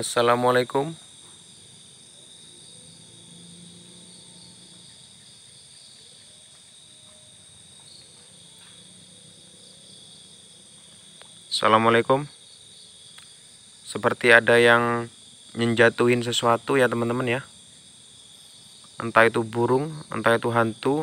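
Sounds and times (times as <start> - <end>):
crickets and insects trilling: 0.0 - 21.0.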